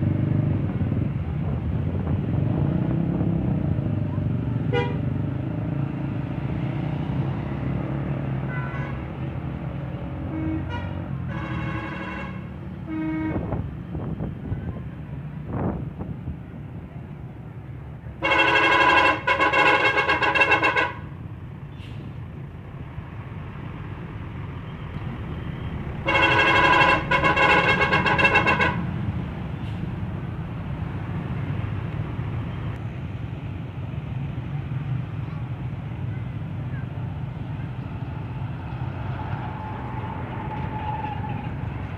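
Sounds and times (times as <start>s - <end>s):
low engine and road rumble: 0.0s - 41.9s
musical bus air horn: 4.7s - 5.0s, 8.5s - 9.1s, 10.2s - 13.5s, 18.2s - 21.1s, 26.0s - 28.9s.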